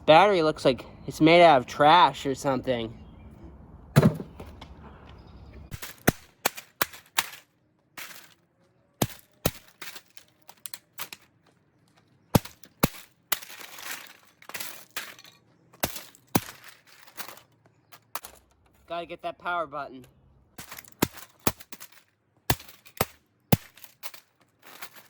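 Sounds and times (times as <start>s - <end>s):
rattling scrapes: 5.7s - 8.4s, 12.4s - 18.9s, 20.6s - 25.0s.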